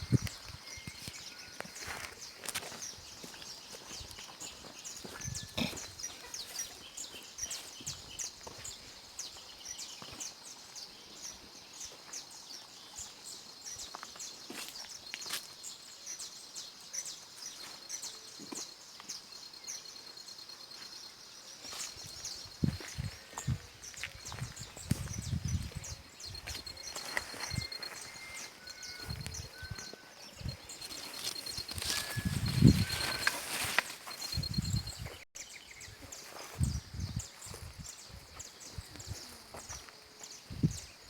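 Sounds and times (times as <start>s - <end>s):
small birds chirping: 0.0s - 41.0s
high bird trill: 22.7s - 35.2s.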